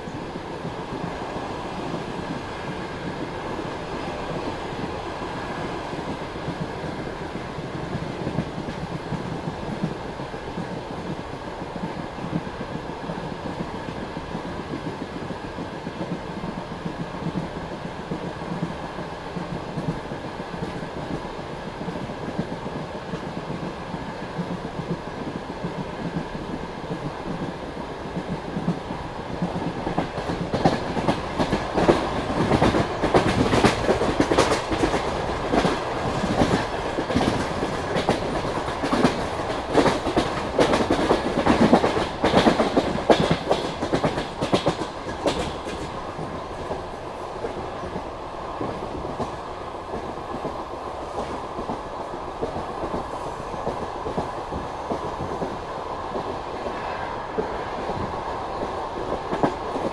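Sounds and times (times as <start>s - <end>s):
train rumble: 0.0s - 59.9s
train wheels clattering over joints: 29.4s - 48.0s.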